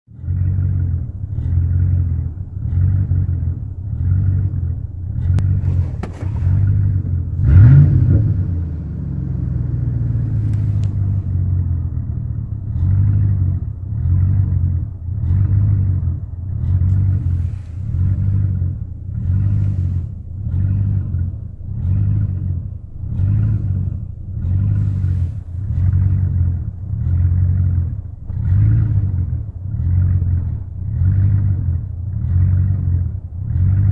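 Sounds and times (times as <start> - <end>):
engine revving: 0.1 - 33.9
truck engine idling roughly: 10.1 - 33.9.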